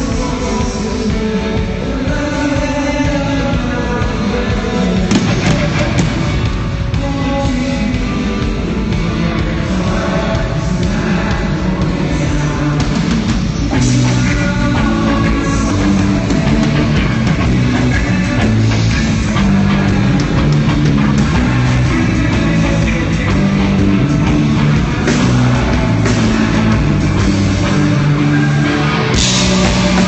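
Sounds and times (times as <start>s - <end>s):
rock band playing loud: 0.0s - 30.0s.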